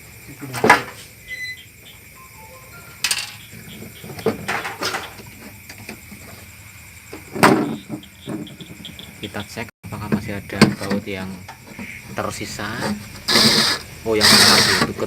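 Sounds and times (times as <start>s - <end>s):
knocks and clatter of parts: 0.5s - 1.0s, 3.0s - 6.4s, 7.1s - 8.9s, 10.0s - 11.9s.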